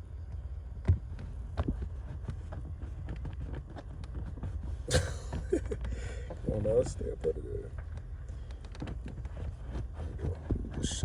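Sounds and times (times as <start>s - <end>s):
rustling scrape: 8.2s - 11.0s.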